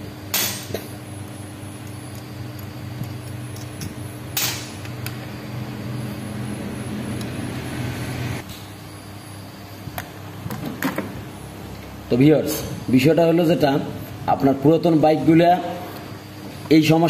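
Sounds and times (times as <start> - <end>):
engine running: 2.2 - 8.6.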